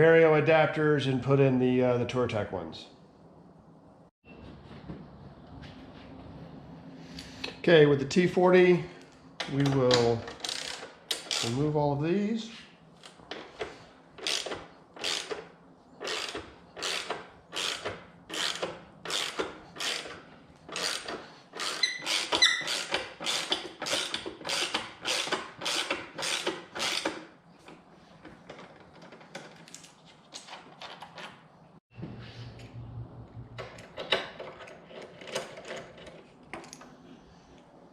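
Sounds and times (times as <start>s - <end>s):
ratchet wrench clicking: 10.2s - 11.6s, 14.2s - 27.2s.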